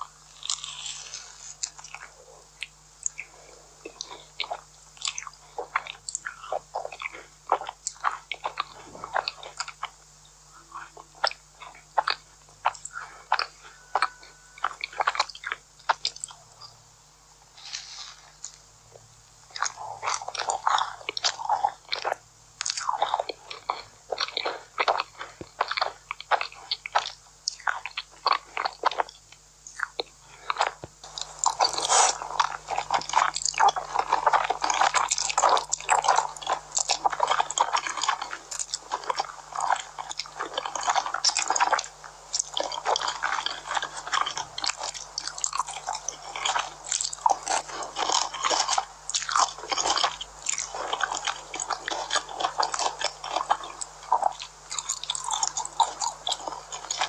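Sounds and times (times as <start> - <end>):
person biting and chewing food: 0.0 - 10.2, 10.8 - 16.8, 17.5 - 57.0
sharp crunches of food: 0.3 - 3.3, 19.4 - 57.0.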